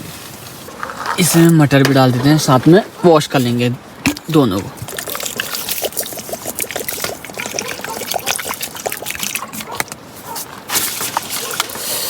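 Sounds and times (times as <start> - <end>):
water sloshing while washing rice: 4.7 - 11.8.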